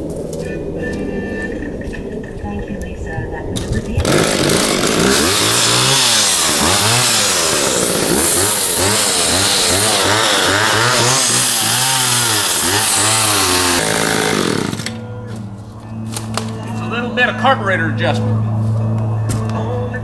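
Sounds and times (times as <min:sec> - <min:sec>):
chainsaw revving: 0:04.0 - 0:15.0.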